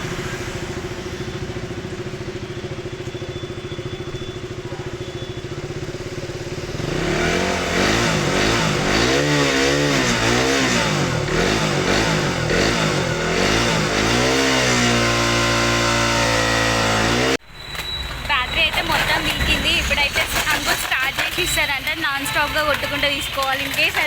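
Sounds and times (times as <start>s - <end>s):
motorcycle engine revving: 0.0s - 17.4s.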